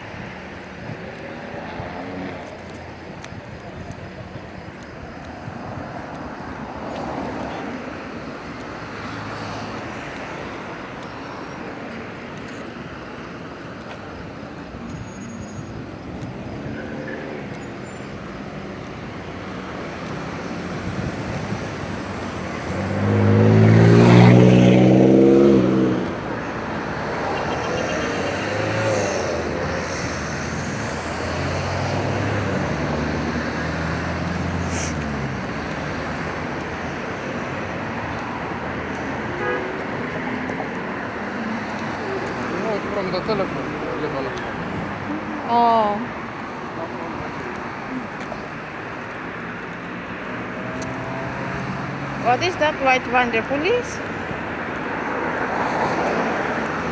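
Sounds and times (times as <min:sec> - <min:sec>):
distant vehicles passing: 0:00.0 - 0:56.9
car passing close: 0:15.3 - 0:56.9.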